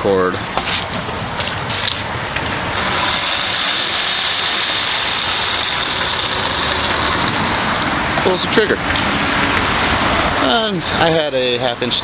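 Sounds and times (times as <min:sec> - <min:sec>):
reciprocating saw running: 0:02.6 - 0:08.5.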